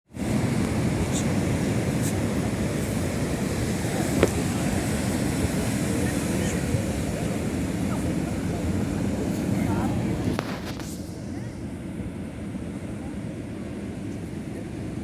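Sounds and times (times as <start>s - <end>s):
sea waves and surf rumbling: 0.1s - 15.0s.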